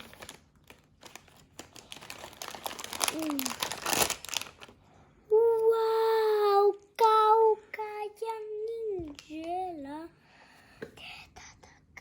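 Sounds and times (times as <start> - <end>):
packaging crinkling: 0.0 - 4.8.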